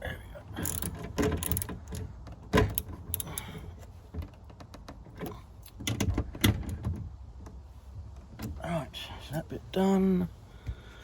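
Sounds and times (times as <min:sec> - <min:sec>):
hands and tools on trim panel: 0:00.6 - 0:08.6.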